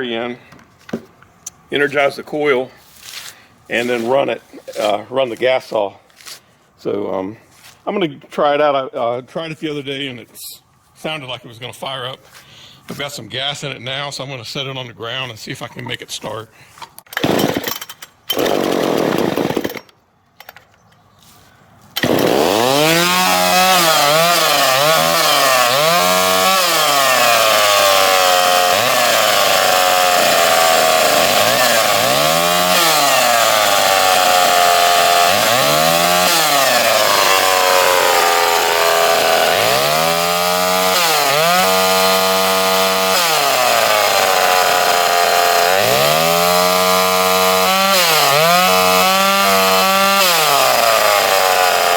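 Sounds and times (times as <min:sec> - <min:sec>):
chainsaw engine revving: 0:17.2 - 0:19.8, 0:22.0 - 0:51.9.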